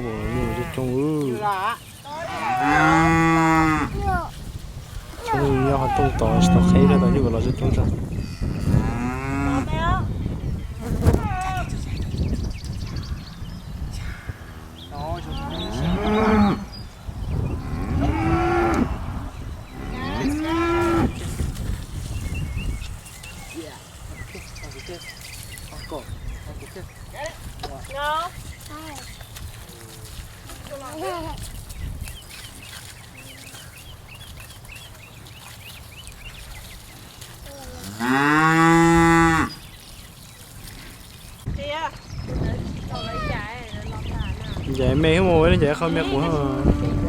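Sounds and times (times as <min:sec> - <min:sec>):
cattle mooing: 0:00.0 - 0:01.0, 0:02.2 - 0:04.0, 0:05.2 - 0:07.4, 0:14.5 - 0:16.7, 0:17.6 - 0:21.1.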